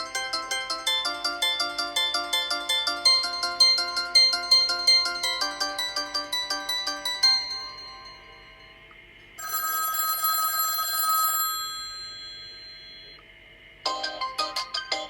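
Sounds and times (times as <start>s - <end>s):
bright chiming ringtone notes: 0.0s - 8.8s, 9.4s - 13.2s
trilling bell-like telephone ring: 6.5s - 8.8s, 9.4s - 13.2s.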